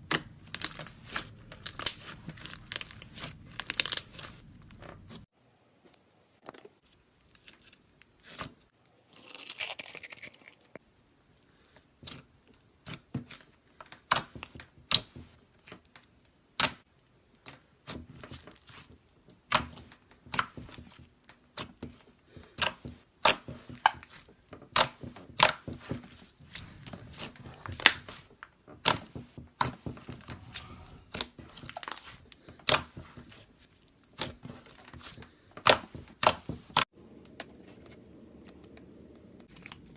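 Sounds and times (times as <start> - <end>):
rustling crinkle: 0.3 - 5.3, 6.5 - 10.8.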